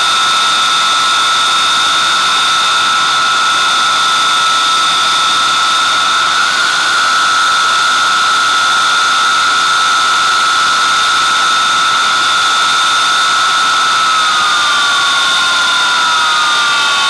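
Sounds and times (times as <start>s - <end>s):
high jet whine: 0.0s - 17.0s
jet engines rushing: 13.4s - 17.0s.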